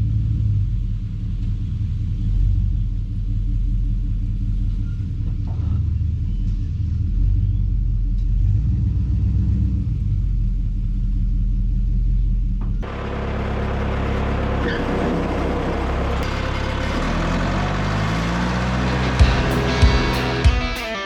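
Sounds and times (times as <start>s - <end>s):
large farm machinery engine running: 12.6s - 20.6s.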